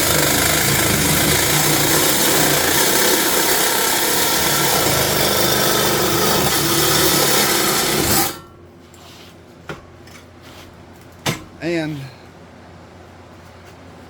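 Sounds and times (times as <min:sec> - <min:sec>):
reciprocating saw cutting metal pipe: 0:00.0 - 0:08.5.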